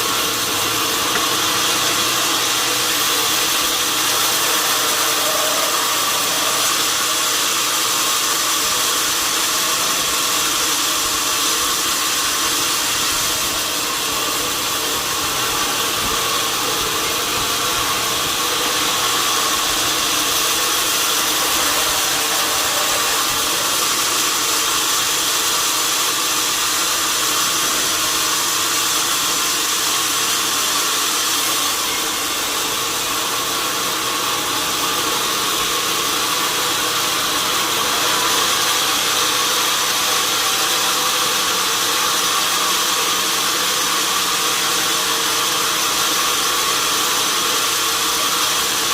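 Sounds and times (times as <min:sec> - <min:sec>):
sawmill machinery running: 0:00.0 - 0:48.9.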